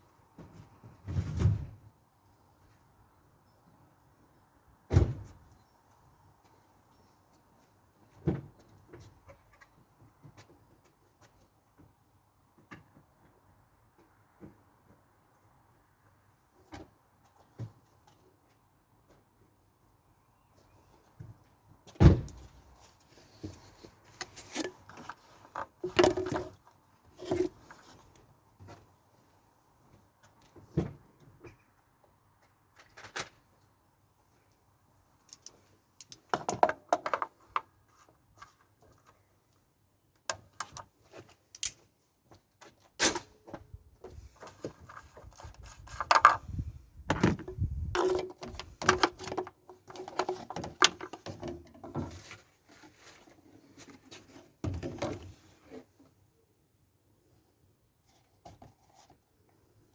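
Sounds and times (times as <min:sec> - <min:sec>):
hands handling parts and tools: 0:35.2 - 0:39.6, 0:40.2 - 0:56.2.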